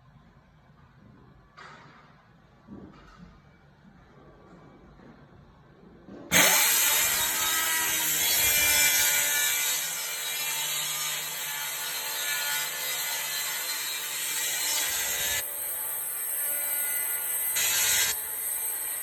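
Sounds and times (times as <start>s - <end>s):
power tool cutting wood: 6.3s - 19.0s.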